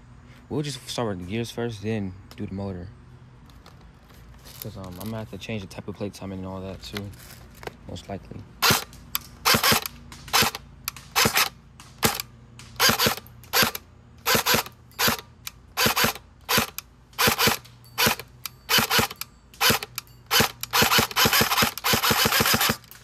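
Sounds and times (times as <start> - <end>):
airsoft gun shots: 8.6 - 15.2, 15.8 - 23.0.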